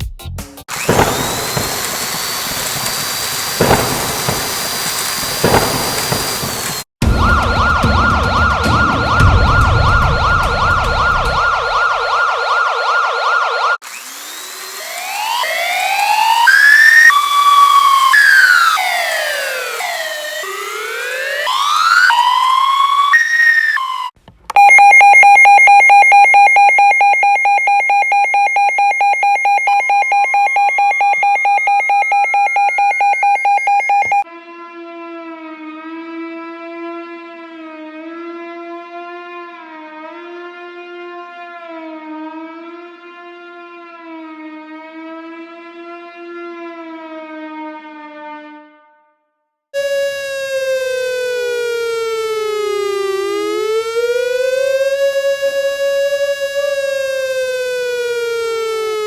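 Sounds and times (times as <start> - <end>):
rapid alarm beeping: 0.7 - 34.2, 49.8 - 58.2
siren tone sweeping: 0.7 - 34.4, 49.8 - 59.0
wavering siren tone: 0.7 - 48.9, 49.8 - 59.0.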